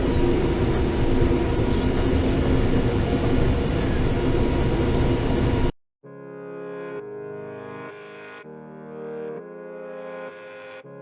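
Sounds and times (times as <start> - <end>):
combine harvester engine drone: 0.0 - 5.7.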